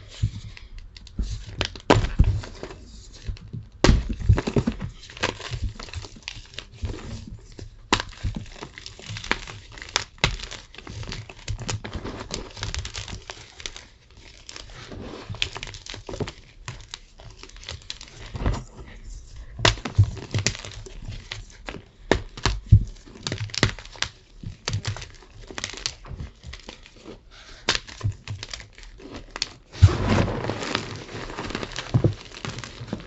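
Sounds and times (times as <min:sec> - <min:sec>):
chalk crunching and crumbling: 0:00.0 - 0:33.0.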